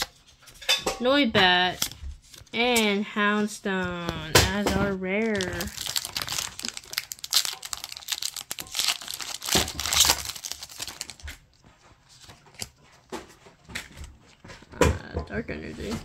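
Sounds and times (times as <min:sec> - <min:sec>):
foil wrapper crinkling and tearing: 0:05.2 - 0:12.8.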